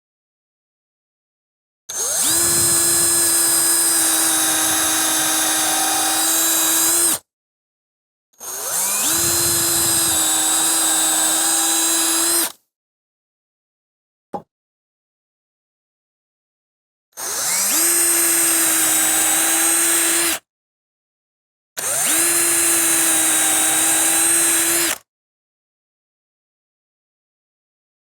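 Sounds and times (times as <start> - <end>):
power drill running: 2.0 - 7.2, 8.4 - 12.5, 17.2 - 20.4, 21.8 - 25.0.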